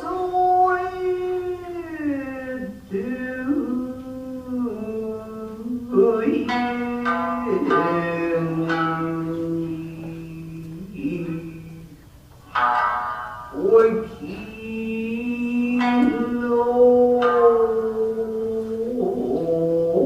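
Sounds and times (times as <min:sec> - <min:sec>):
person singing long sliding notes: 0:00.0 - 0:20.0
shamisen plucks: 0:06.4 - 0:11.8, 0:12.4 - 0:18.6.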